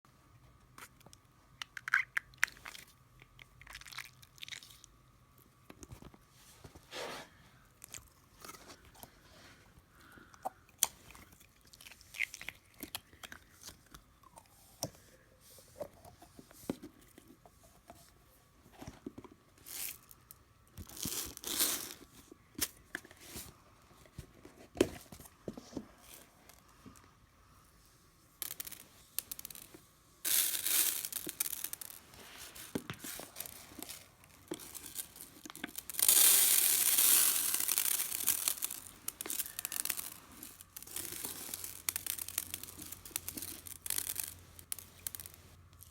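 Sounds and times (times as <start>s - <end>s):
crunchy slime squishing: 1.9s - 4.9s, 30.7s - 45.9s.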